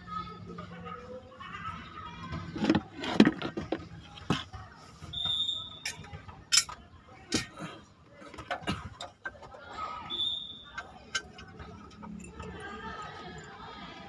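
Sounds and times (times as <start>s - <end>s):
metallic clinks of hand tools: 5.8s - 6.8s, 10.7s - 13.6s.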